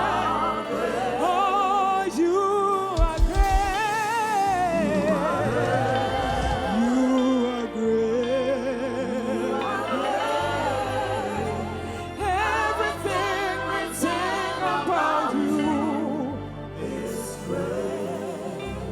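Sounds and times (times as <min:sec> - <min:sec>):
bass line: 0:00.0 - 0:18.9
person singing with vibrato: 0:00.0 - 0:18.9.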